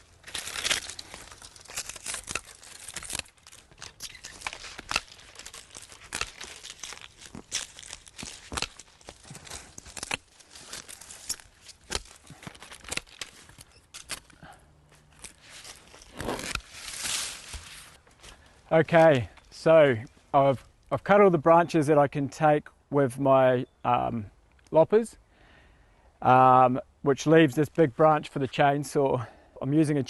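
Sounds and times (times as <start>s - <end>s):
leafy twigs rustling and crackling: 0.0s - 21.0s
loppers snipping branches: 0.2s - 14.5s, 15.1s - 18.0s.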